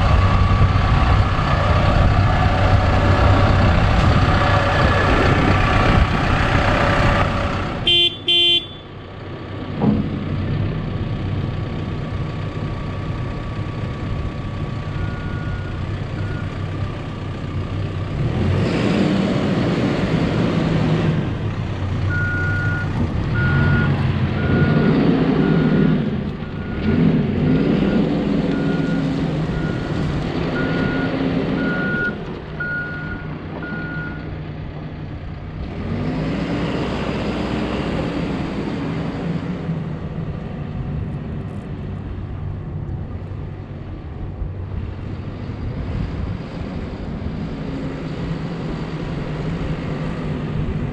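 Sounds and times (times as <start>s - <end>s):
diesel engine running: 0.0s - 50.9s
horn toots: 7.8s - 8.9s
reversing alarm beeping: 15.0s - 16.5s, 22.1s - 25.8s, 27.6s - 30.0s, 30.6s - 34.2s.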